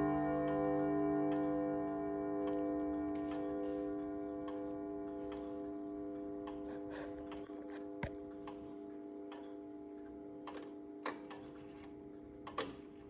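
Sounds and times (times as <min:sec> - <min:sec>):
clock chime rods ringing: 0:00.0 - 0:07.6.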